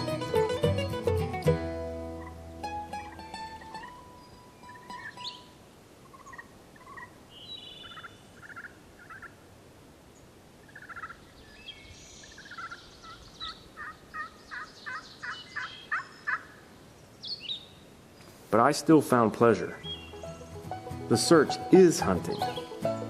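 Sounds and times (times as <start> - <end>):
birds chirping and whistling: 3.0 - 5.5, 6.1 - 8.6, 10.8 - 18.4, 19.8 - 20.7, 22.1 - 23.0.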